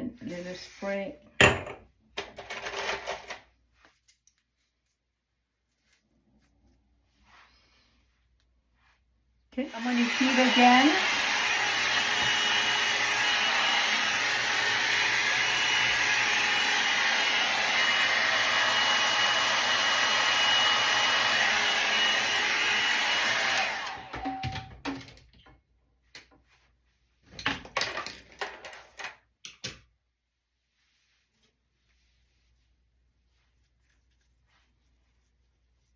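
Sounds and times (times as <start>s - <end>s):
hair dryer blowing: 9.6s - 24.6s.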